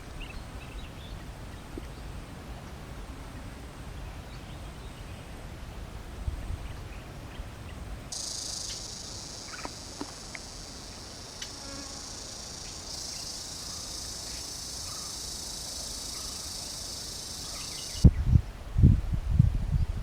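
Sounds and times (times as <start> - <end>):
insects shrilling: 8.1 - 18.0
faint clicks: 8.2 - 10.6.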